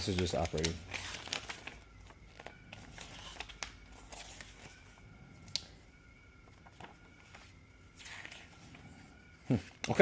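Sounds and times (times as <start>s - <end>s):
packaging rustling: 0.0s - 5.7s.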